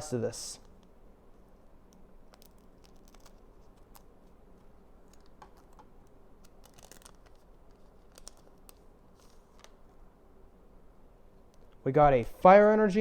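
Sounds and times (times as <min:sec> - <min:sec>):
trading cards being handled: 0:01.8 - 0:10.0
wrapper rustling: 0:02.3 - 0:05.8, 0:06.4 - 0:09.9.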